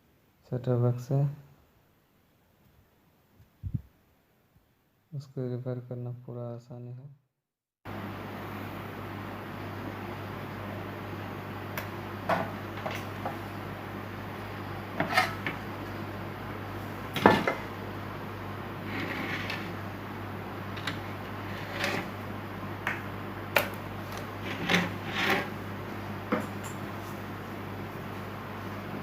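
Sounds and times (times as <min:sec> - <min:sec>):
steady low hum: 0:07.9 - 0:29.0.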